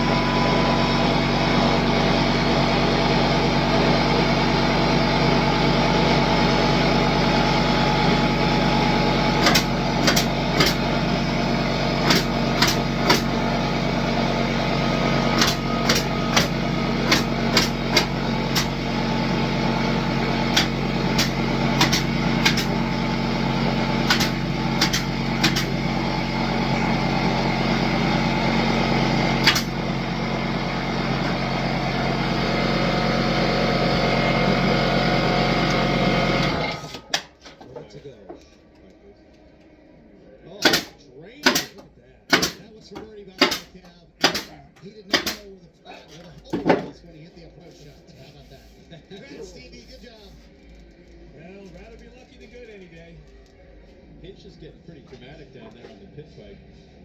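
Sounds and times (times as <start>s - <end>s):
steady engine drone: 0.0s - 37.2s
sharp clicks and knocks: 20.5s - 22.7s, 24.1s - 25.7s.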